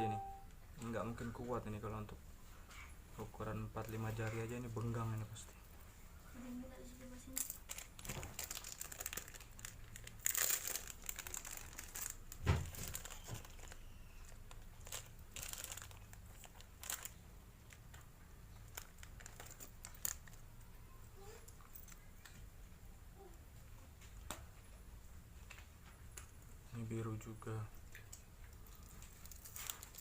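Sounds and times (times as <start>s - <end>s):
packaging crinkling: 7.4s - 20.4s, 28.6s - 30.0s.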